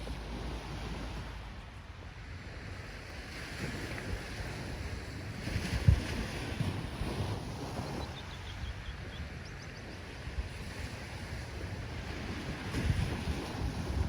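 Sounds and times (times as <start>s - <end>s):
ocean surf washing: 0.0s - 9.4s, 10.0s - 14.0s
wind buffeting microphone: 2.6s - 9.5s, 10.2s - 14.0s.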